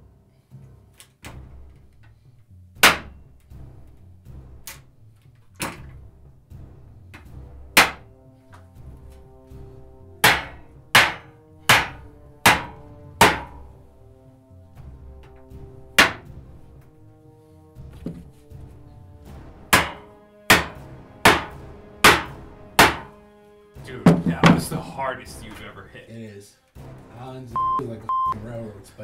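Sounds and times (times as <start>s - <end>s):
background music: 0.0s - 29.0s
sharp hard knife strikes: 2.8s - 3.2s, 7.8s - 8.1s, 10.2s - 13.6s, 16.0s - 16.3s, 19.7s - 23.1s.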